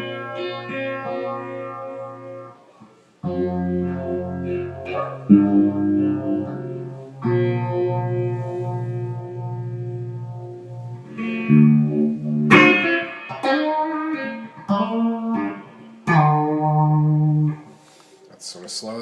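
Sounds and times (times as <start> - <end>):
electric guitar with phaser: 0.0 - 17.7.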